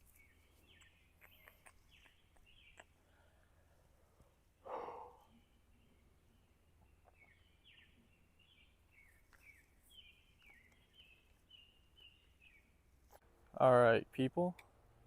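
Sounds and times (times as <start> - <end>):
bird chirping: 0.0 - 3.5, 4.6 - 12.9.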